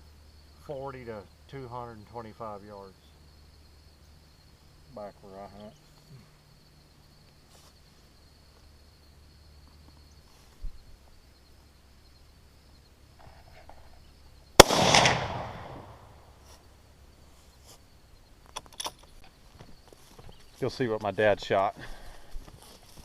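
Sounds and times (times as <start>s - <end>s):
rifle shot with echo: 14.6s - 16.3s.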